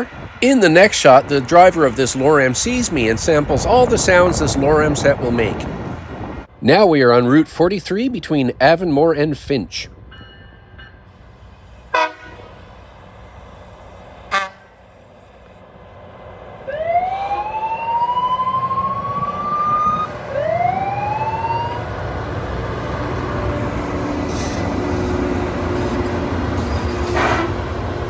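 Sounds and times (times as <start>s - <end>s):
short horn toots: 14.3s - 14.7s, 27.0s - 27.7s
siren winding up: 16.7s - 22.0s.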